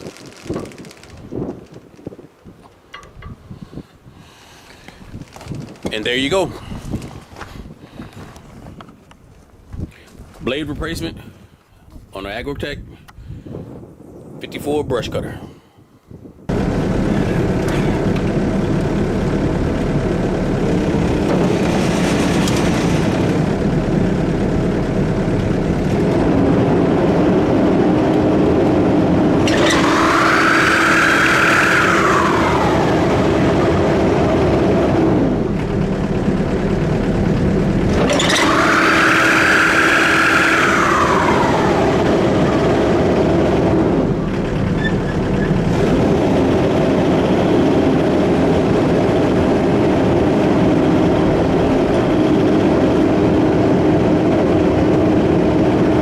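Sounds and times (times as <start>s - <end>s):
excavator engine hum: 16.5s - 56.0s
high machine whine: 16.5s - 56.0s.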